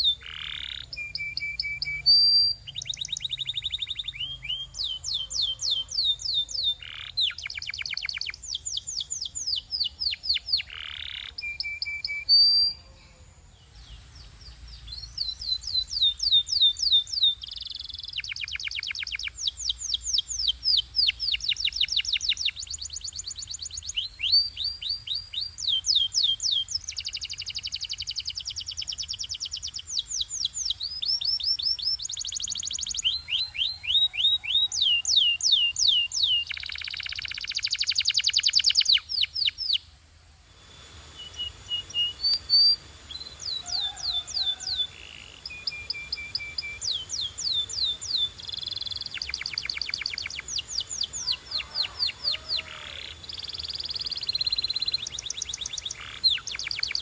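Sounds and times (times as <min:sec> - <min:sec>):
canary singing trills: 0:00.0 - 0:39.9, 0:40.5 - 0:57.0.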